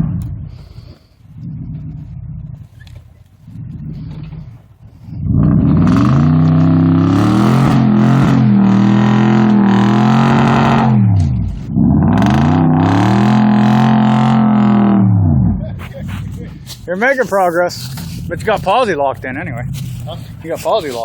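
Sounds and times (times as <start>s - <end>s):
chainsaw engine revving: 5.3s - 15.4s.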